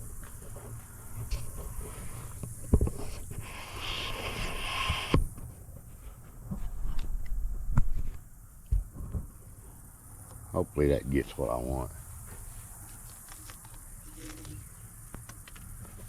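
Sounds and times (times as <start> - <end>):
short hiss: 3.0 - 5.3.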